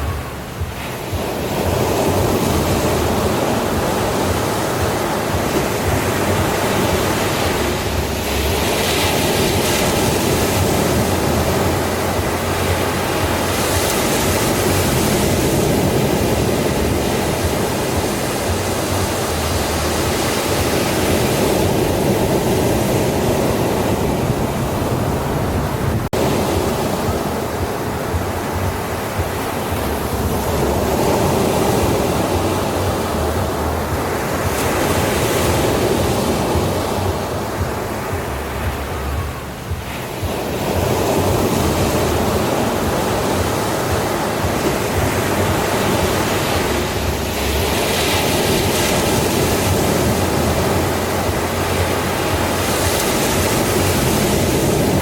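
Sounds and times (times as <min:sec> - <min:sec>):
ocean waves breaking on beach: 0:00.0 - 0:55.0.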